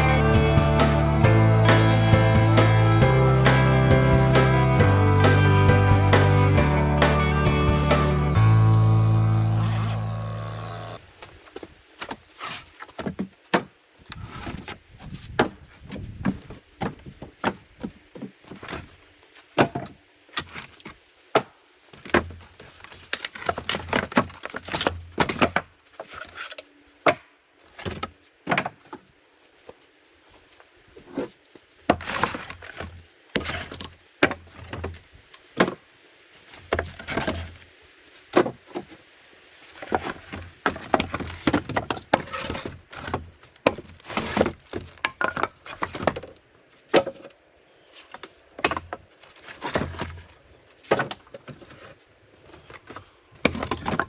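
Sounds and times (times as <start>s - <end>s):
wooden boards knocking and clattering: 12.9s - 19.0s, 19.6s - 20.7s, 21.4s - 29.0s, 31.9s - 35.0s, 35.6s - 35.8s, 36.6s - 37.6s, 39.8s - 47.4s, 48.0s - 51.9s, 52.5s - 54.0s.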